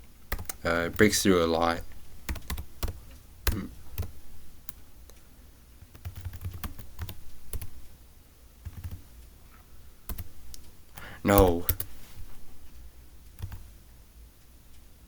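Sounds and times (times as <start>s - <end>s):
computer keyboard typing: 0.3s - 4.8s, 5.8s - 7.9s, 8.6s - 9.1s, 10.1s - 12.0s, 13.3s - 13.7s.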